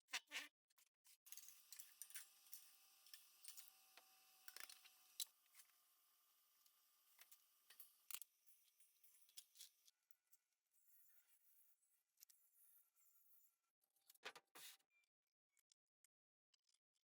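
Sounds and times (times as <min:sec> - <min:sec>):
small sharp clicks and ticks: 0:01.3 - 0:05.8, 0:06.6 - 0:10.0.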